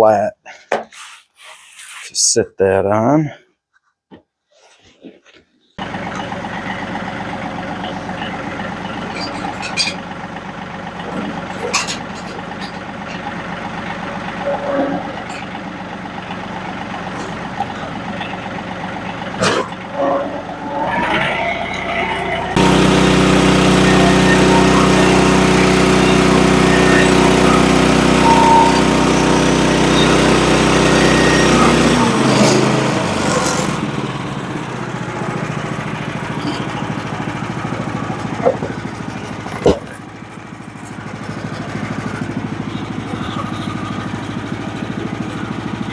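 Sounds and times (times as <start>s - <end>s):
sawmill engine running: 5.8s - 45.9s
sharp knocks and clanks: 38.2s - 40.0s.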